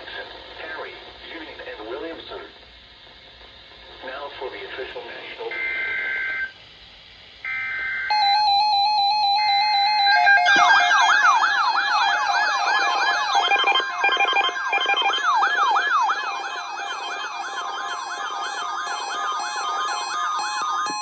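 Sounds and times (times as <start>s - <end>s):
buzzing data tones: 7.4s - 21.0s
electronic siren sweeping: 7.4s - 21.0s.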